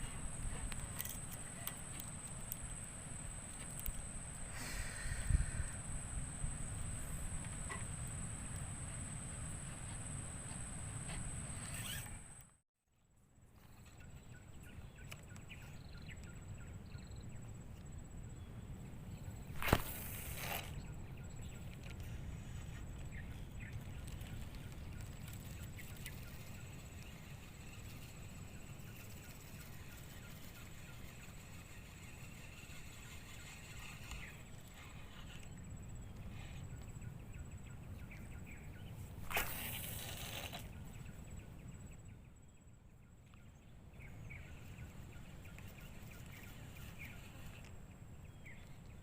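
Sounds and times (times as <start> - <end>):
faint chirps: 0.0 - 12.5
wind rumble on microphone: 2.1 - 11.6.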